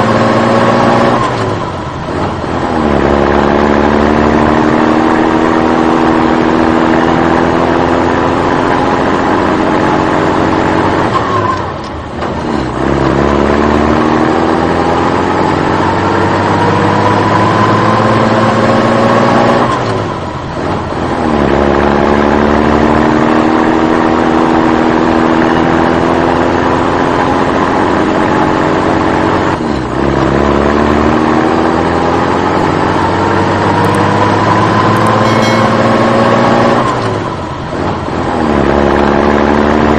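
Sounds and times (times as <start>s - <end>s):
vehicle engine accelerating: 0.0s - 39.9s.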